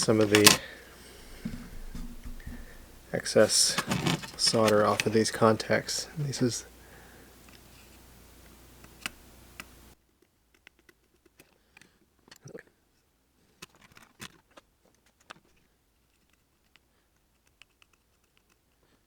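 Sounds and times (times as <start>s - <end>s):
low background hiss: 0.0s - 10.0s.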